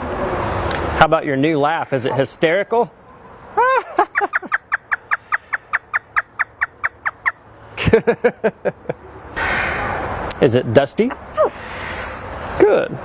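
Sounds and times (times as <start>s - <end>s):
parrot mimicking laughter: 3.6s - 7.3s.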